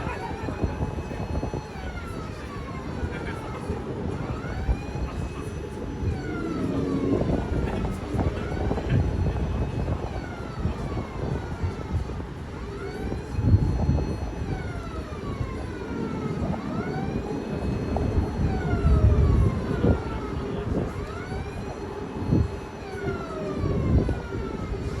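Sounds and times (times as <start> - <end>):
siren wailing: 0.0 - 25.0.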